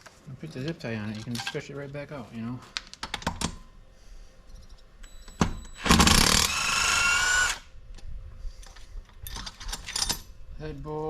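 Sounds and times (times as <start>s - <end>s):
power tool motor spinning: 5.8s - 7.7s.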